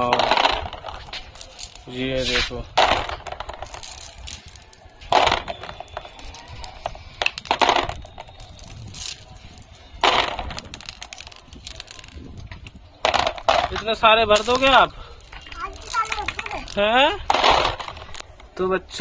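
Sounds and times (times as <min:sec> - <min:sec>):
glass marbles poured into toy truck: 0:02.9 - 0:12.3.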